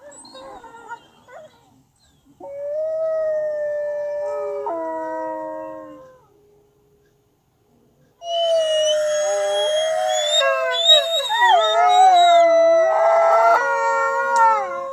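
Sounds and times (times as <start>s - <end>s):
wolves howling: 2.4s - 6.3s, 8.2s - 14.9s
wavering yips and whines: 8.2s - 12.5s.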